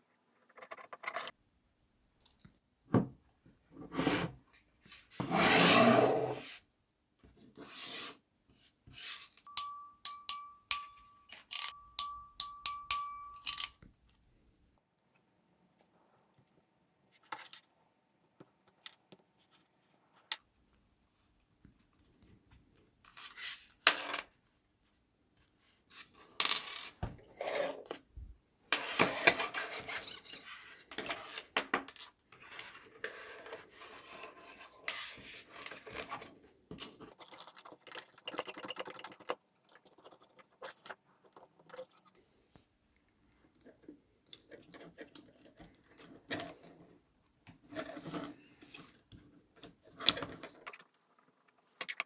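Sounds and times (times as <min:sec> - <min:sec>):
rubbing or scraping: 0:03.8 - 0:04.4, 0:05.1 - 0:06.6
hardware clicks and metallic clinks: 0:09.4 - 0:14.4.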